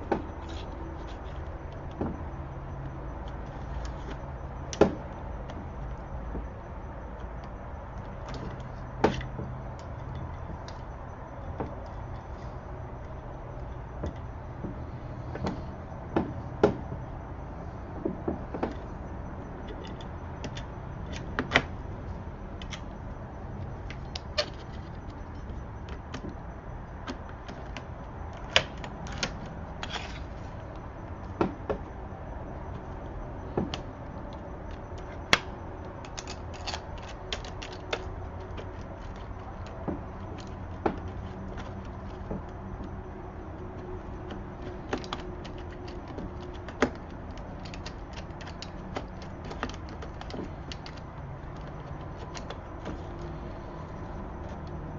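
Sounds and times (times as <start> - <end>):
low background hum: 0.0 - 54.9
metal parts clicking and tapping: 33.6 - 54.9.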